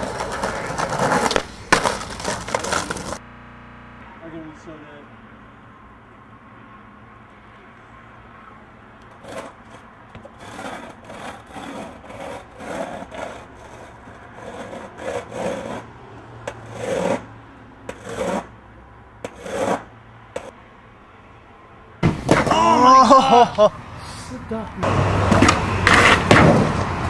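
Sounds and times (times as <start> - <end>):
skateboard scraping on concrete: 0.0 - 3.2, 9.1 - 17.3, 17.9 - 18.6, 19.2 - 20.6, 24.8 - 27.0.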